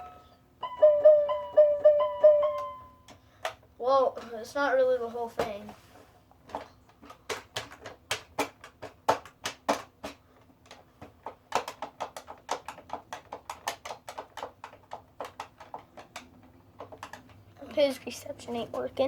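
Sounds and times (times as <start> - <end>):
quick irregular clicks: 7.0 - 17.4.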